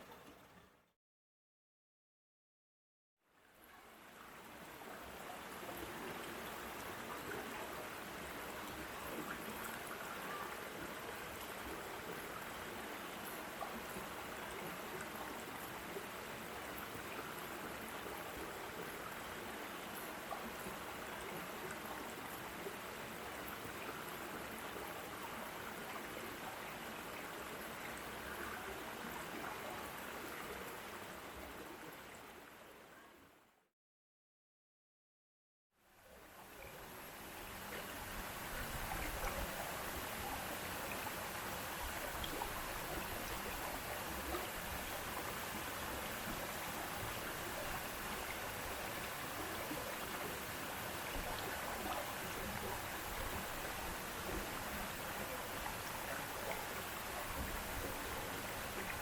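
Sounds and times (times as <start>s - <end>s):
stream water rushing: 36.8s - 59.0s.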